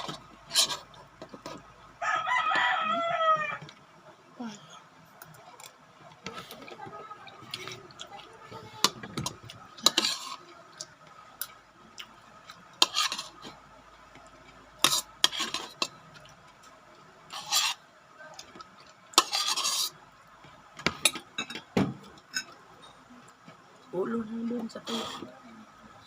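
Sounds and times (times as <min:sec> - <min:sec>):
utensils clinking on a plate: 0:08.6 - 0:10.5, 0:12.8 - 0:13.4, 0:19.2 - 0:19.9, 0:20.8 - 0:22.9.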